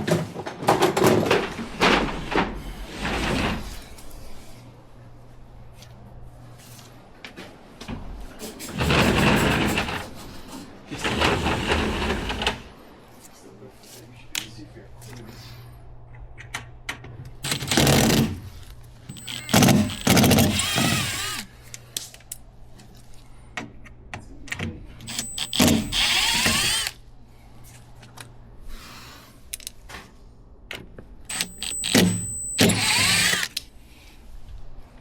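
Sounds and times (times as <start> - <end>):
power drill whining: 17.4 - 18.3, 19.1 - 21.5, 25.0 - 27.0, 31.3 - 33.6.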